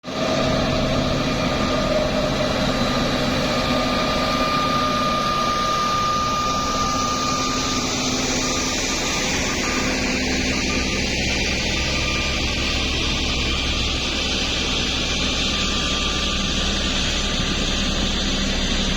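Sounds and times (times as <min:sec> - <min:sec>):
heavy machinery engine running: 0:00.0 - 0:18.9
high whine: 0:00.0 - 0:18.9.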